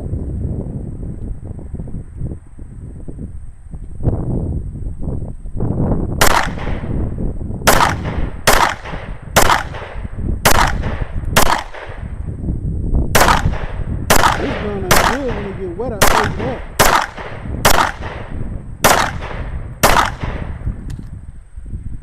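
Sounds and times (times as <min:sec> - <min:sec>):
wind rumbling on microphone: 0:00.0 - 0:22.0
pistol shots echoing: 0:06.2 - 0:07.0, 0:07.7 - 0:12.1, 0:13.2 - 0:20.6.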